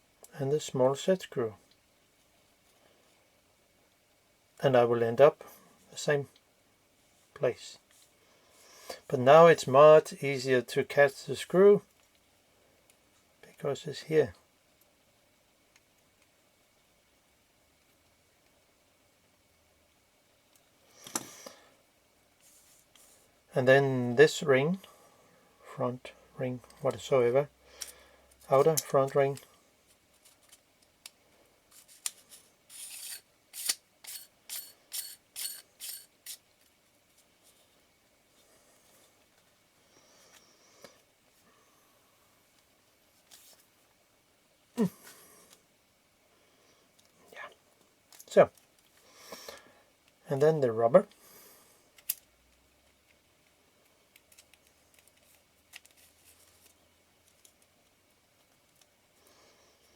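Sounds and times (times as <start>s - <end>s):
small parts clicking: 31.8s - 36.4s
lens ring scraping rubs: 32.7s - 36.4s.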